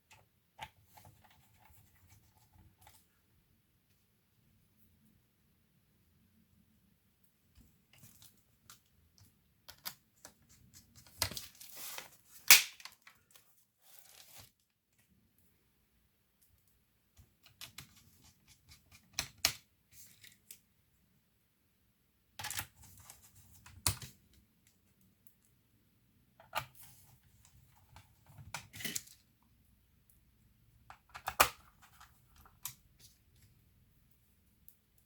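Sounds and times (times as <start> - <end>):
sharp plastic snap: 12.5 - 13.0.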